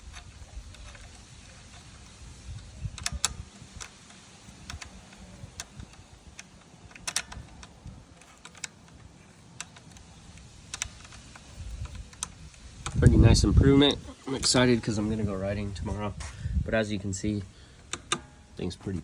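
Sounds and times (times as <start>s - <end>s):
small metal parts clicking: 0.0s - 15.0s
low handling rumble: 9.9s - 19.0s.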